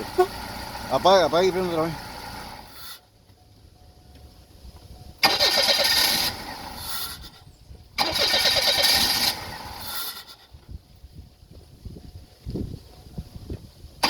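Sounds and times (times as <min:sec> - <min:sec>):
car starter cranking engine: 0:05.2 - 0:10.6.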